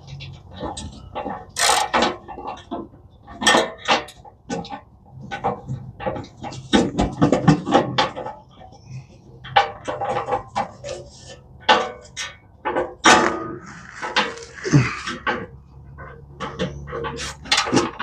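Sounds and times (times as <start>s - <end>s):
hand tools clanking on metal: 0.0s - 8.8s.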